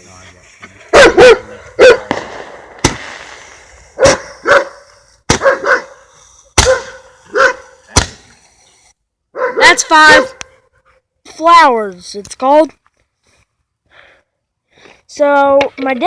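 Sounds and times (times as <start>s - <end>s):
dog barking: 0.9s - 2.1s, 4.0s - 6.0s, 6.6s - 7.8s, 9.3s - 10.6s
sharp crack: 1.8s - 5.9s, 6.5s - 8.5s.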